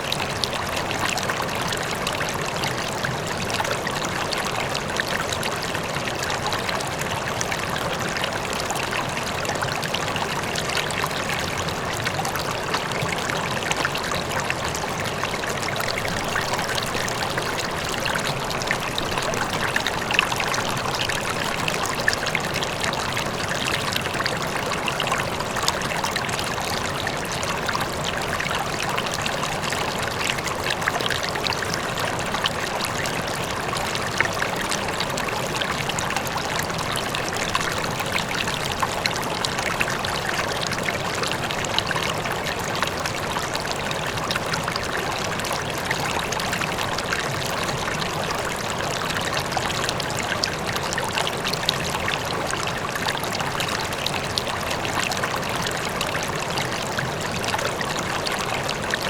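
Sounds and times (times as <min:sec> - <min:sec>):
river flowing over rocks: 0:00.0 - 0:59.0
small splashes and trickles: 0:00.0 - 0:59.0.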